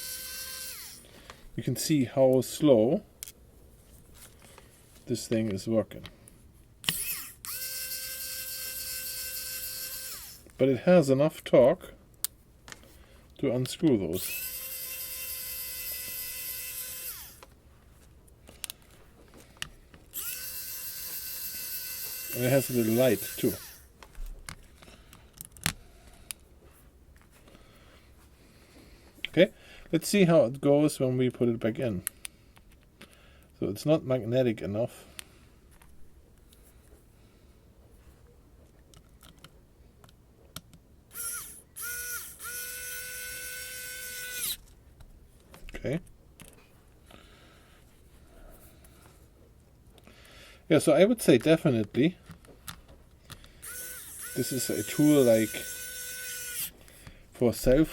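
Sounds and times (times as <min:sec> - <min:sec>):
electric screwdriver motor whine: 0:00.0 - 0:01.0, 0:06.9 - 0:10.4, 0:14.2 - 0:17.4, 0:20.2 - 0:23.9, 0:41.1 - 0:44.6, 0:53.6 - 0:56.7.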